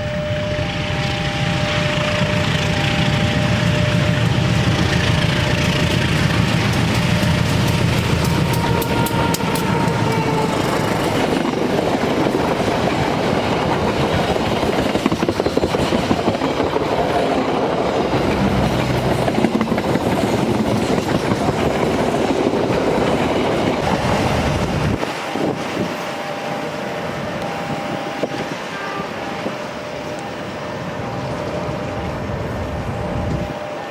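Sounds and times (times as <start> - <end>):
train wheels rushing on rails: 0.0 - 33.9
clickety-clack over rail joints: 2.1 - 26.2.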